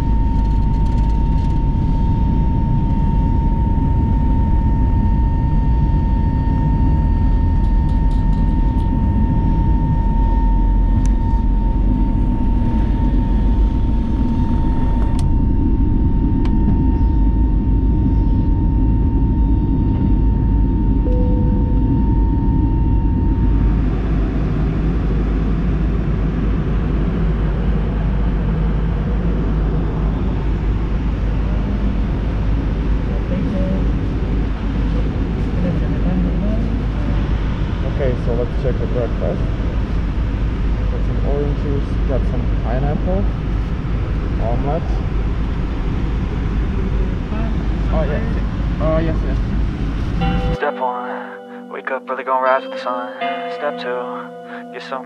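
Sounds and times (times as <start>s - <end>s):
airliner cabin rumble: 0.0s - 50.6s
thin steady whine: 0.0s - 55.0s.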